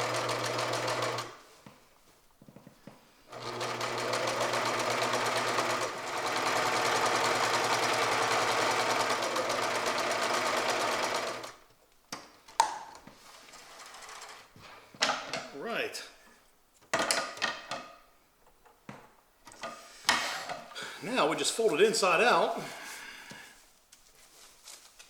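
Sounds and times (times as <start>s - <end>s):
sewing machine stitching: 0.0s - 1.4s, 3.3s - 11.6s, 13.5s - 14.5s.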